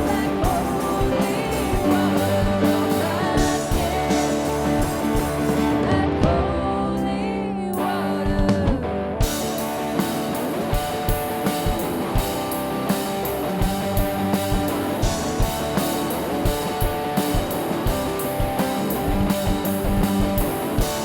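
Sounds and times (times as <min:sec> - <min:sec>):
steady drum beat: 0:00.0 - 0:06.5, 0:08.3 - 0:21.0
person singing: 0:00.0 - 0:09.2
band music with guitar: 0:00.0 - 0:21.0.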